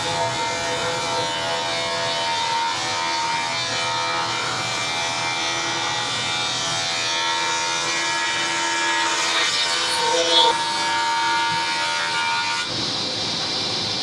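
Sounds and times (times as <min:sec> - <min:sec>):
saw ripping board: 0:07.1 - 0:12.7.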